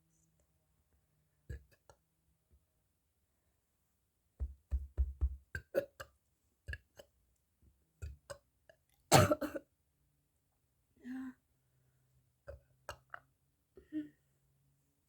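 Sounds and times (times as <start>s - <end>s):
rough burp: 9.1s - 9.6s.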